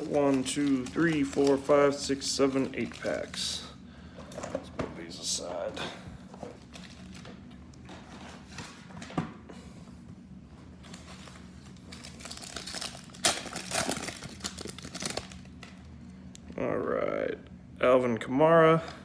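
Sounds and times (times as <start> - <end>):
wrapper crinkling and tearing: 0.0 - 3.6, 6.6 - 7.4, 10.9 - 15.8.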